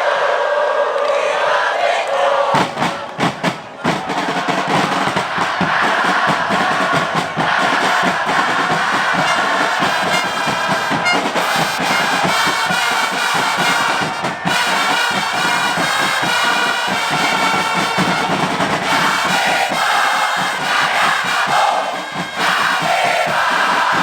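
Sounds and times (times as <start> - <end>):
stadium crowd noise: 0.0 - 24.0
drumbeat: 2.5 - 24.0
trumpets playing a tune: 9.1 - 21.0.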